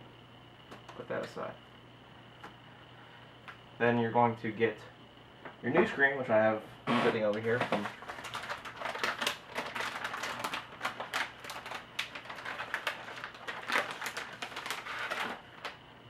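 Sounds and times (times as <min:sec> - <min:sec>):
clicks and crackles of handling: 0:07.3 - 0:15.8.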